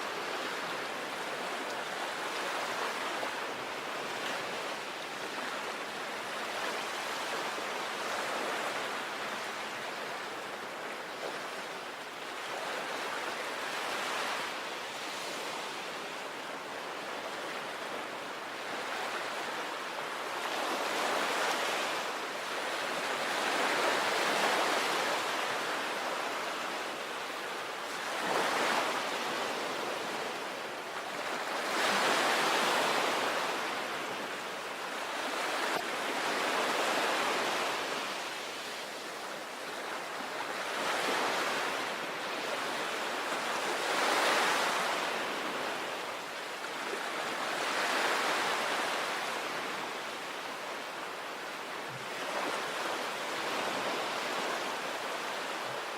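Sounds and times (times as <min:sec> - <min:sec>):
sea waves breaking on beach: 0:12.2 - 0:55.9.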